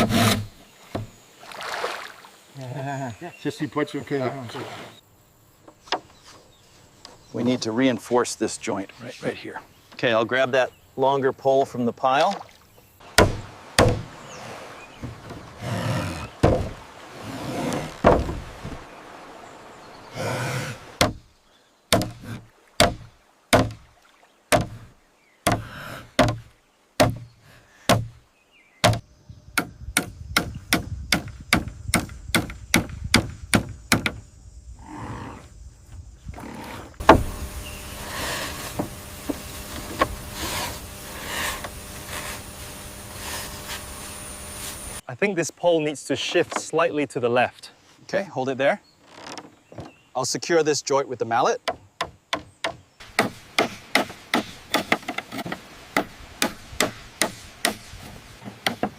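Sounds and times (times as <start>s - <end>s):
bamboo and wood knocking: 0.0s - 1.2s, 5.6s - 6.4s, 12.1s - 14.2s, 16.4s - 18.9s, 21.0s - 21.3s, 21.9s - 23.9s, 24.5s - 27.3s, 27.9s - 28.2s, 28.8s - 29.0s, 29.6s - 34.2s, 37.0s - 37.5s, 38.4s - 40.9s, 51.6s - 58.9s
outdoor hiss: 0.0s - 58.9s.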